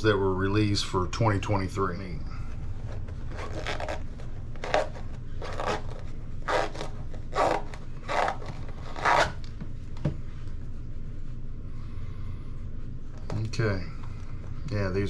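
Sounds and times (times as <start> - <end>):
hands rubbing rubber tires: 2.6 - 9.7.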